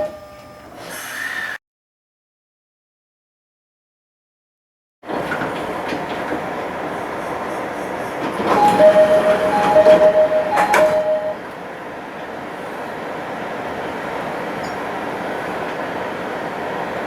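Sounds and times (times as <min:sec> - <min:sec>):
train hum: 0:05.1 - 0:17.0
two-note train door chime: 0:08.5 - 0:11.5.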